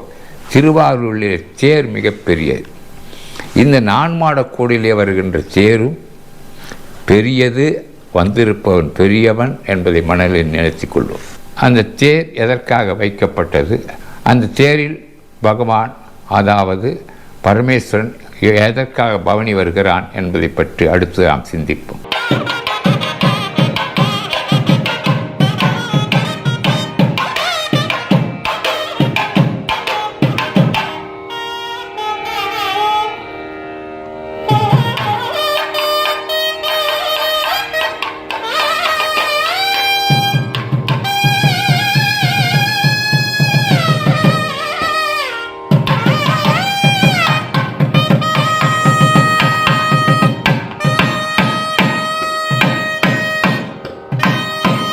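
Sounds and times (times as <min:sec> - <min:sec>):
reedy wind instrument: 0:22.0 - 0:54.9
quick drum strokes: 0:22.1 - 0:31.0, 0:37.8 - 0:45.0, 0:45.7 - 0:54.9
bending melody over drone: 0:22.1 - 0:47.8.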